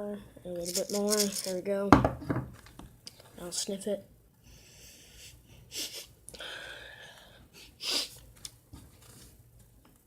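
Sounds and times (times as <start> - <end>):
person sniffing hard: 7.7 - 8.2.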